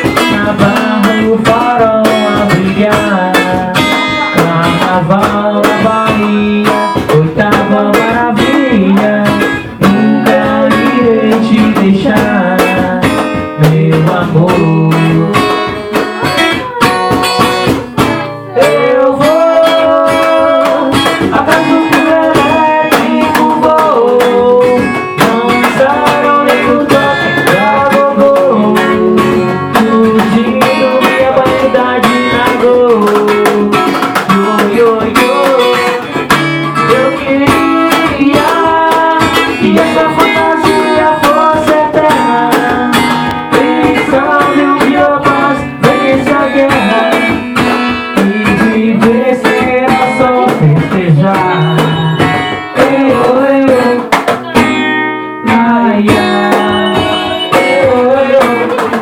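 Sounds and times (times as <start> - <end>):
lively guitar melody: 0.0 - 59.0
strummed guitar accompaniment: 0.0 - 59.0
wavering melody line: 56.3 - 58.5.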